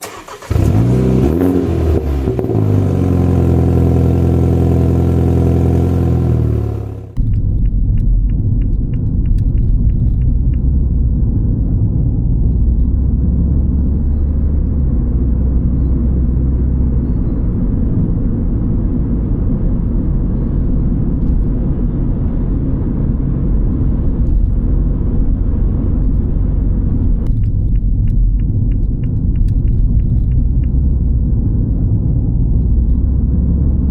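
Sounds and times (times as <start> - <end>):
car road and engine rumble: 0.0 - 33.9
light regular ticking: 27.2 - 31.1.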